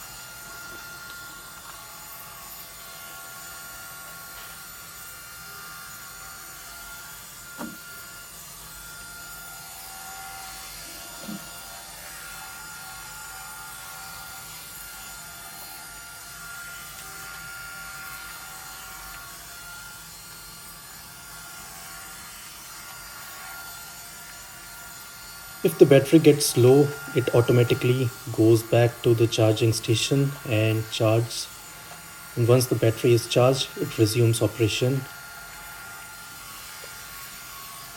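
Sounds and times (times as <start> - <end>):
robot vacuum running: 7.4 - 8.2.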